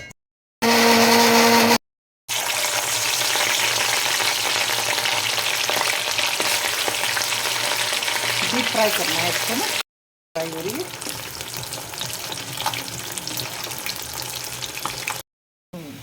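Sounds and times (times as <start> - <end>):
mixer grinder whirring: 0.6 - 1.8
fish sizzling in hot oil: 2.3 - 9.8, 10.4 - 15.2.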